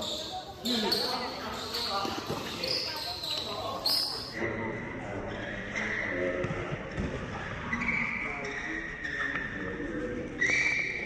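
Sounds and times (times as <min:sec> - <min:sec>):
shoe squeaks: 0:00.0 - 0:04.4, 0:07.6 - 0:09.7, 0:10.3 - 0:11.0
players' voices: 0:00.0 - 0:11.0.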